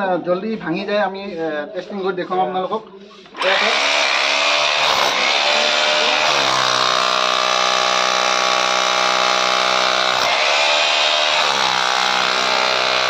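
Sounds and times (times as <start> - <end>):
rotary hammer breaking concrete: 3.4 - 13.0.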